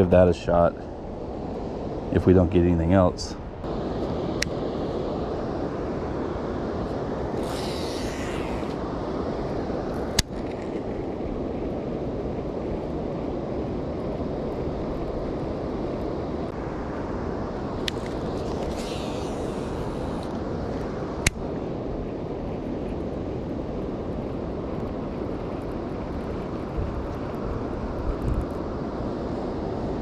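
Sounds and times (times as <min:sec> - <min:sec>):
brief high hiss: 0:07.4 - 0:08.8, 0:18.5 - 0:20.3.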